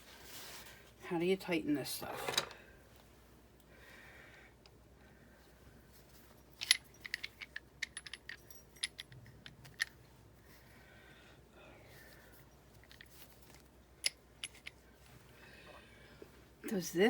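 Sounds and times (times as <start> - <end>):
light metallic clicks and clinks: 6.4 - 10.0, 14.0 - 14.8.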